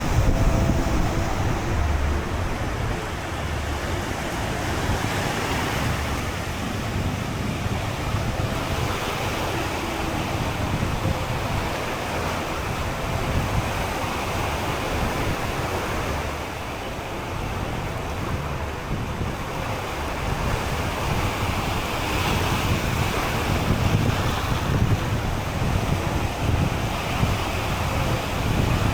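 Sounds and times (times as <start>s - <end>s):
surf breaking on beach: 0.0s - 28.9s
wind buffeting microphone: 0.0s - 28.9s.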